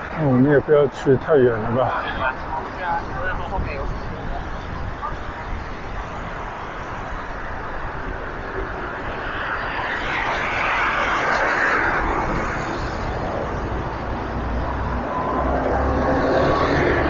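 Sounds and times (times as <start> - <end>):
road traffic noise: 0.0 - 17.0
vehicle passing: 5.7 - 17.0.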